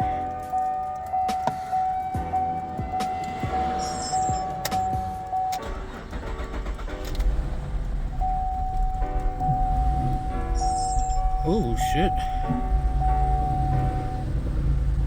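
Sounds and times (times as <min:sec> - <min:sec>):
car engine starting: 0:00.0 - 0:15.0
engine running unevenly: 0:01.3 - 0:15.0.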